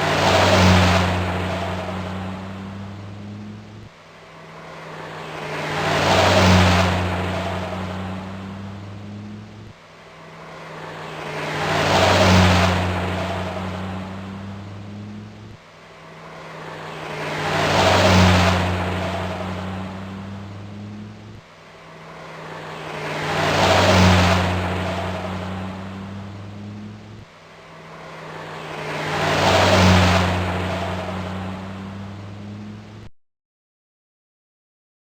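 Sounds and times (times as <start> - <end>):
car driving past: 0.0 - 33.1.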